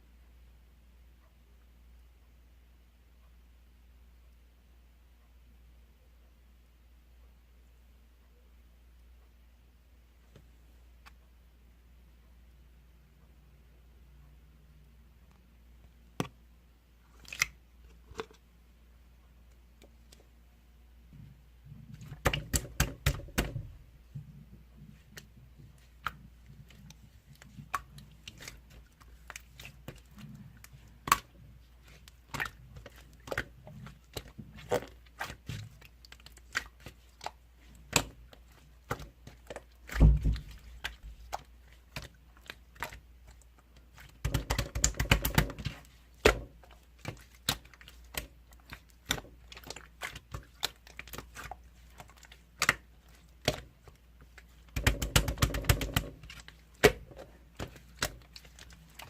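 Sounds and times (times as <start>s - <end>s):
loud slime squelch: 21.7s - 24.0s, 24.9s - 59.0s
slime being squished by hand: 21.9s - 23.8s, 24.9s - 59.0s.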